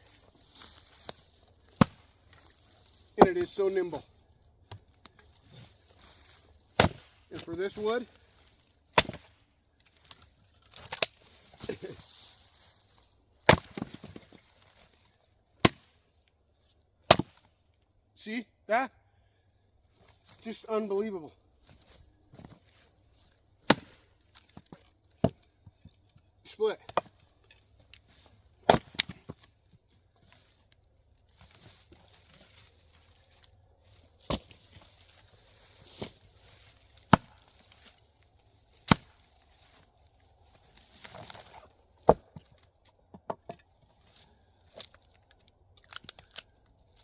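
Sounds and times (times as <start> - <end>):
split wood pieces falling: 0.1 - 3.7, 4.6 - 15.0, 23.6 - 47.0
axe striking firewood: 0.6 - 3.7, 4.6 - 8.1, 8.9 - 9.4, 10.0 - 11.6, 13.4 - 14.6, 15.6 - 16.0, 17.1 - 17.5, 23.6 - 25.9, 26.8 - 27.2, 28.1 - 29.5, 34.2 - 34.8, 36.0 - 38.0, 38.8 - 39.8, 41.0 - 43.7
axe chopping wood: 1.7 - 2.1, 6.7 - 7.5, 8.9 - 9.4, 13.4 - 14.3, 15.6 - 15.9, 17.1 - 17.5, 23.6 - 25.4, 26.8 - 27.2, 28.6 - 29.4, 34.2 - 34.6, 37.0 - 37.9, 38.8 - 39.3, 41.0 - 42.5.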